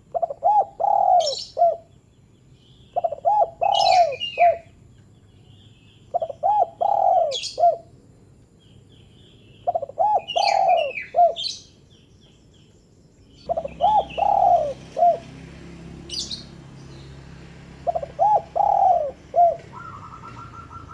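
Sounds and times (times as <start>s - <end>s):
dove cooing: 0.0s - 1.9s, 3.0s - 4.7s, 6.1s - 7.9s, 9.7s - 11.6s, 13.5s - 20.9s
small birds chirping: 0.0s - 20.9s.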